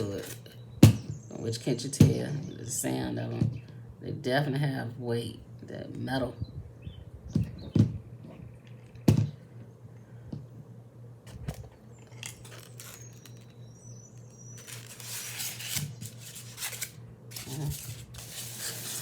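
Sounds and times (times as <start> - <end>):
steady low hum: 0.0 - 19.0
rubbing and scraping: 14.6 - 19.0.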